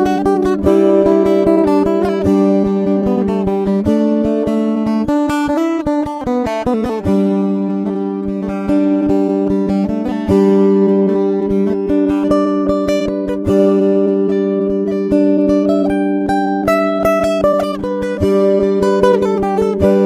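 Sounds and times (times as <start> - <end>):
background music with plucked guitar: 0.0 - 20.0.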